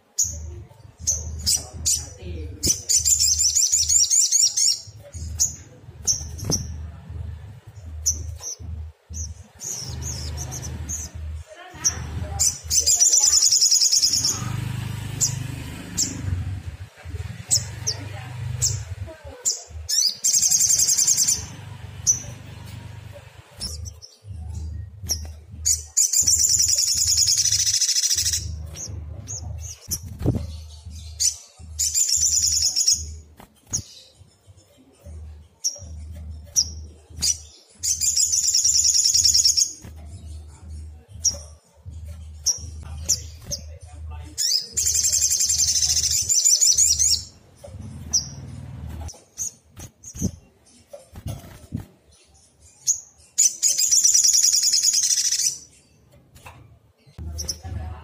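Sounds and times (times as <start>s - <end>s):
sunbird buzzy trills: 7.6s - 16.7s, 17.4s - 43.8s.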